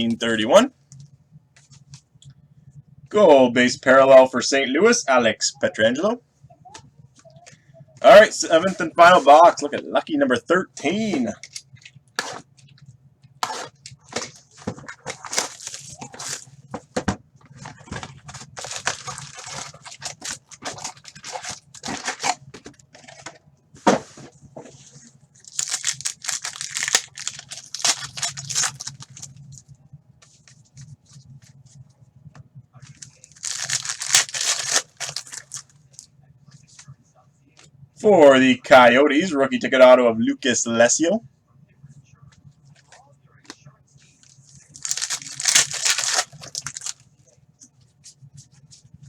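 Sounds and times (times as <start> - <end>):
wrappers tearing and crinkling: 13.4 - 16.5, 17.6 - 22.4, 25.4 - 29.4, 32.9 - 35.7, 44.7 - 47.0.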